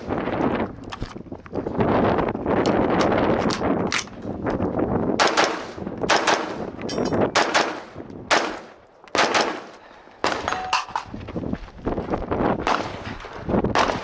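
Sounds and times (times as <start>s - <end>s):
rifle shots: 5.2s - 10.9s, 12.6s - 14.0s.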